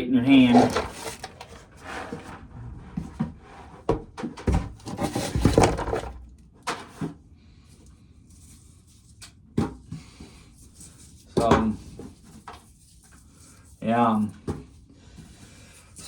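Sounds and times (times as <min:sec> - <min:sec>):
corn cobs and kernels clattering: 0:00.2 - 0:02.4, 0:04.8 - 0:06.8.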